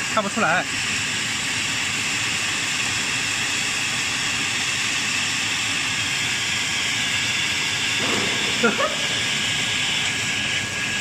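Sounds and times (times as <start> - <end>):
welding equipment hissing: 7.8 - 11.0.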